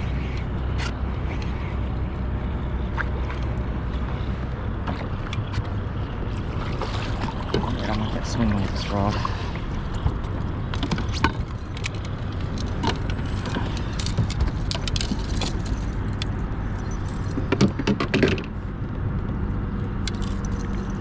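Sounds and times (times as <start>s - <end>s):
steady low rumble: 0.0s - 21.0s
fishing tackle clinking and rattling: 10.7s - 18.4s, 20.0s - 21.0s.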